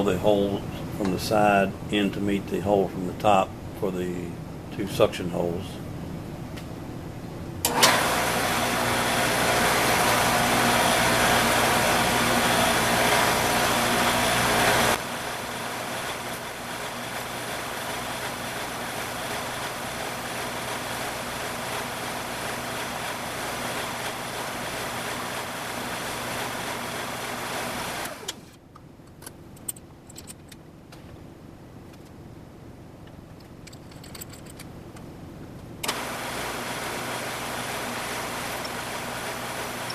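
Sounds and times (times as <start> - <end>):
machine motor running: 7.6 - 28.4, 35.9 - 39.9.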